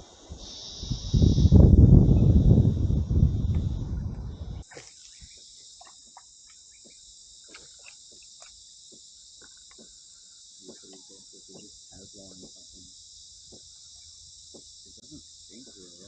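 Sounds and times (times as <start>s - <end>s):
insects chirring: 0.0s - 16.0s
loud low rumbling: 1.0s - 4.6s.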